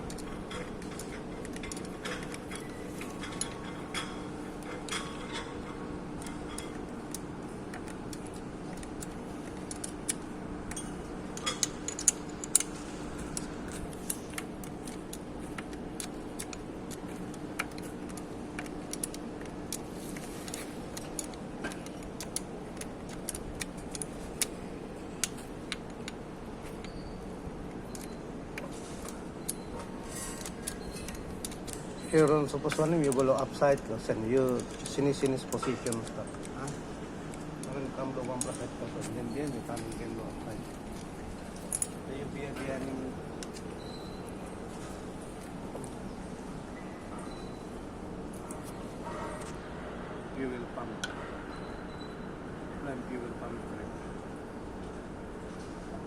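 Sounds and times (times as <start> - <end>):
metal tools clinking: 0.0 - 7.2, 10.7 - 19.2, 27.8 - 45.0
steady low hum: 0.0 - 56.0.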